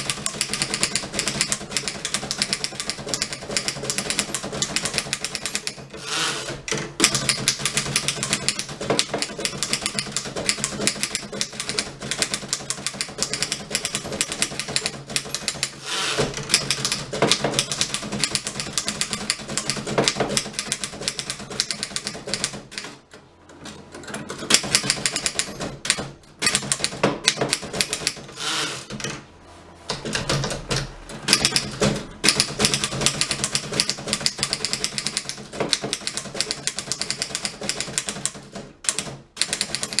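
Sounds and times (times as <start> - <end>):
manual typewriter typing: 0.0 - 29.2, 29.8 - 40.0.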